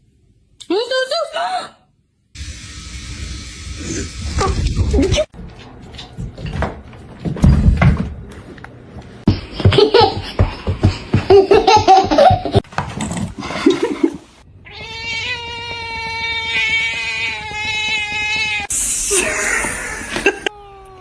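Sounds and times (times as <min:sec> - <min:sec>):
person laughing in bursts: 0:09.5 - 0:12.6, 0:13.4 - 0:14.3, 0:19.0 - 0:20.5
high-pitched cat cry: 0:14.6 - 0:18.7.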